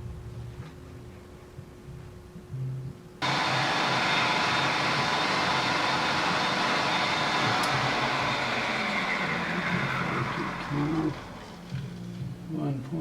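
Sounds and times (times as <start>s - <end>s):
power machine whirring: 3.2s - 12.0s.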